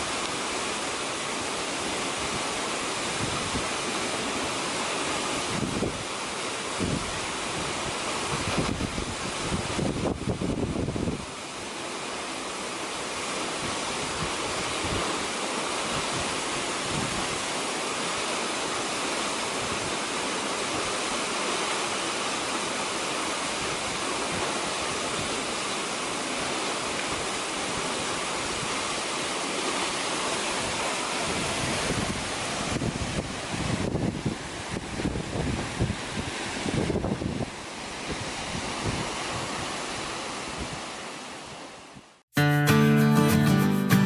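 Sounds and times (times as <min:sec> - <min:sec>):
waterfall rushing: 0:00.0 - 0:44.0
wind buffeting microphone: 0:05.4 - 0:06.1, 0:06.7 - 0:11.3, 0:30.5 - 0:40.9.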